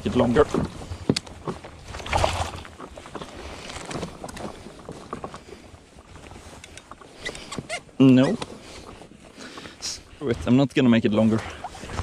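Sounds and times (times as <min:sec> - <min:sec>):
knocks and rustles of gear: 0:00.2 - 0:08.6
water splashing around paddle board: 0:00.2 - 0:10.5, 0:11.2 - 0:12.0.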